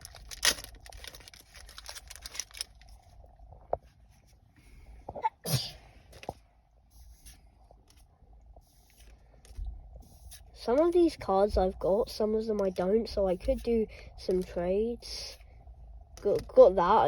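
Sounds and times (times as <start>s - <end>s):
card pack crinkling: 0.0s - 3.2s.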